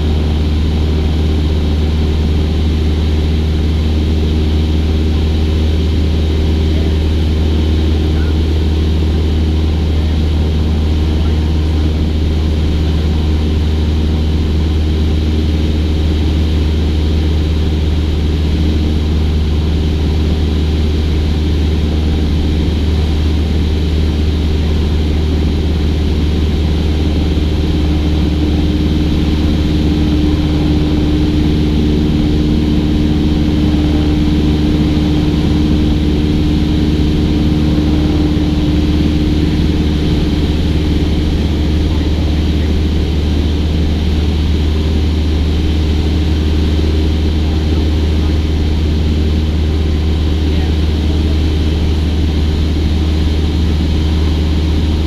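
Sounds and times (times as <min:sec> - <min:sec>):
propeller plane engine droning: 0:00.0 - 0:55.0.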